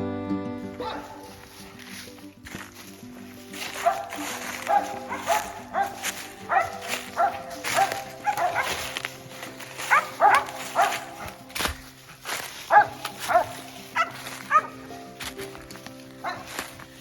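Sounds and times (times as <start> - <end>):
background music: 0.0 - 17.0
dogs barking: 0.8 - 1.4, 3.6 - 15.0, 16.1 - 16.8.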